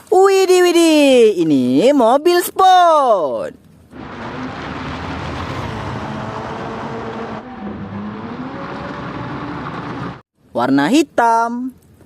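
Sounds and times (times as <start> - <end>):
race car engine: 3.9 - 10.2.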